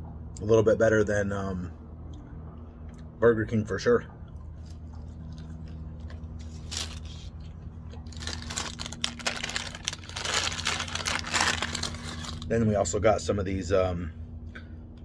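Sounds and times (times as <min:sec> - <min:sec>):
low hum: 0:01.2 - 0:15.0
paper packaging crinkling: 0:06.0 - 0:12.5.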